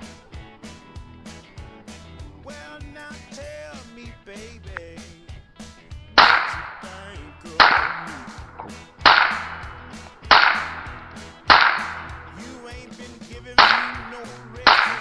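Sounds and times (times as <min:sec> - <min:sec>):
gunshots with echo: 0:06.2 - 0:12.7, 0:13.6 - 0:15.0.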